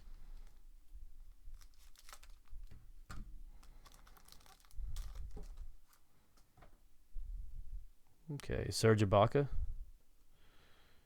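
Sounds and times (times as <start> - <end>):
card wrappers crinkling and tearing: 1.4 - 2.8, 3.5 - 6.0.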